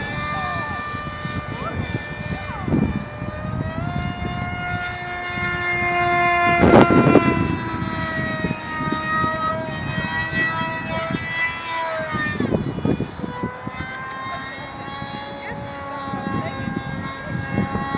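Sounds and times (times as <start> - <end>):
model plane motor whining: 0.0 - 17.9
wind gusts on microphone: 0.0 - 17.9.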